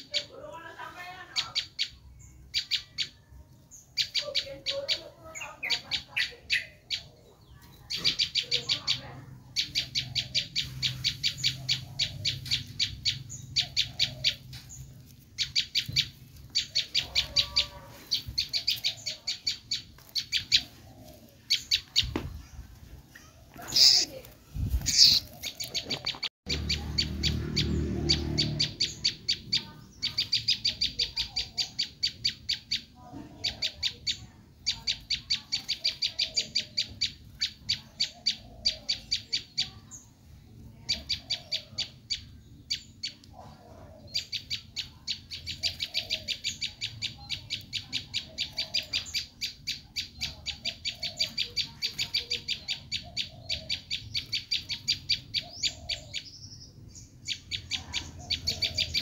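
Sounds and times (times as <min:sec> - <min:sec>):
bird shrill rapid call: 0:23.7 - 0:24.2, 0:24.8 - 0:25.6.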